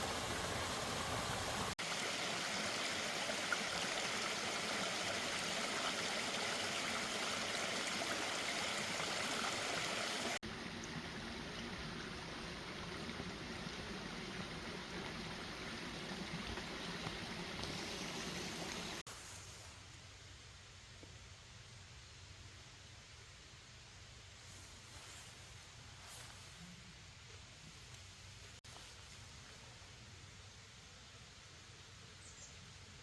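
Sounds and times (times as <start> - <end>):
stream water rushing: 0.0 - 19.0.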